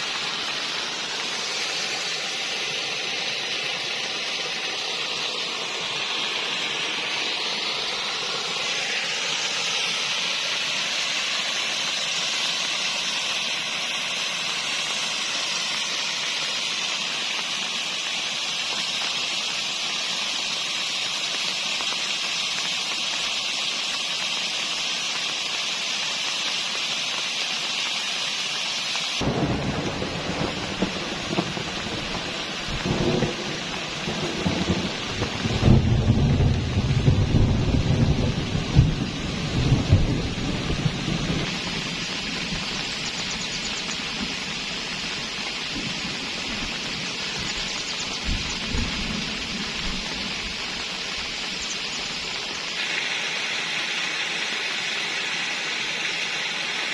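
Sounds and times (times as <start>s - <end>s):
steady rain falling: 0.0s - 56.9s.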